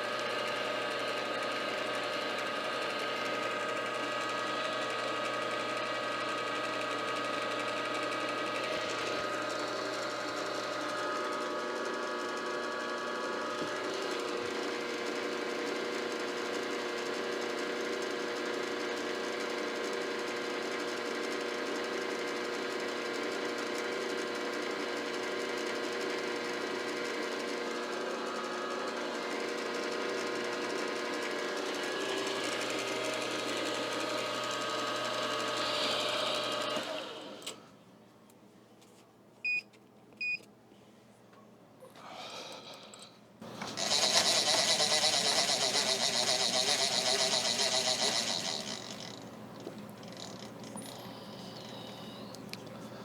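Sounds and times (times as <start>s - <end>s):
milling machine whirring: 27.8s - 37.6s, 43.4s - 53.0s.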